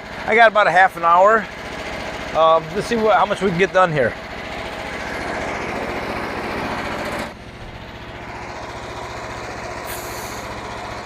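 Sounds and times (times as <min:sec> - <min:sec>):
small engine running: 0:00.0 - 0:11.0
brief high hiss: 0:09.8 - 0:10.4.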